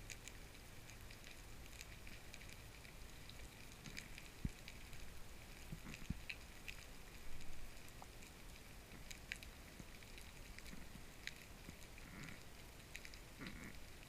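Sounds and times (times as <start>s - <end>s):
steady fine underwater crackling: 0.0s - 14.0s.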